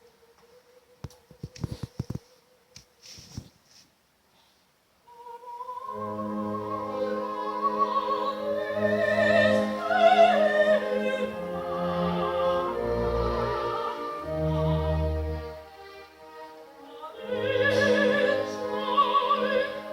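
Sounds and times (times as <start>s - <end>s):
operatic singing with vibrato: 5.1s - 19.9s
orchestra low notes: 5.8s - 19.9s.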